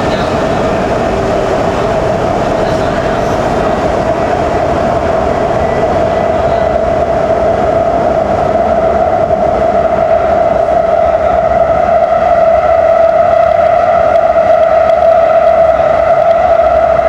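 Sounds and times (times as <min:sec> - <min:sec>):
constant mid-pitched tone: 0:00.0 - 0:07.7
train rumbling at speed: 0:00.0 - 0:17.0.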